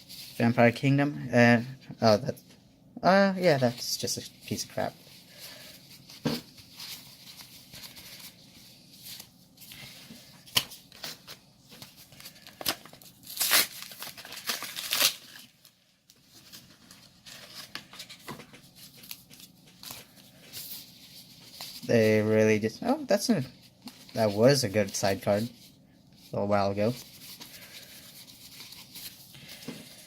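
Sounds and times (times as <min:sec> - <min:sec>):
cards rustling: 0:03.6 - 0:22.2, 0:26.4 - 0:30.0
packaging crinkling and tearing: 0:10.4 - 0:20.8.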